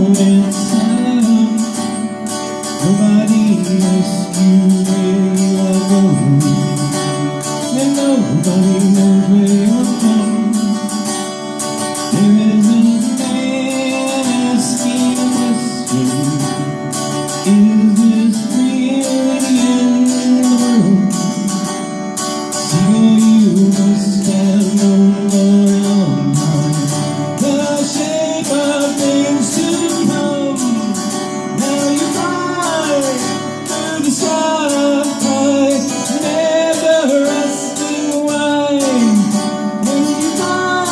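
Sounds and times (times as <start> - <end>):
acoustic guitar strumming: 0.0 - 40.9
person singing long notes: 12.0 - 21.7, 22.7 - 40.9.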